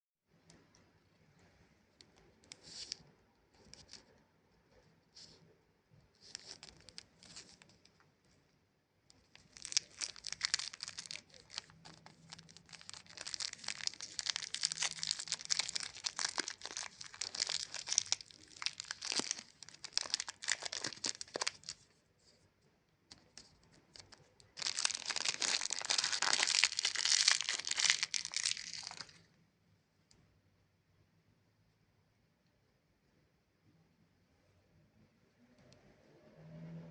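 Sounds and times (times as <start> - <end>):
plastic wrapper crackling: 6.2 - 7.8, 9.2 - 21.8, 23.1 - 29.3.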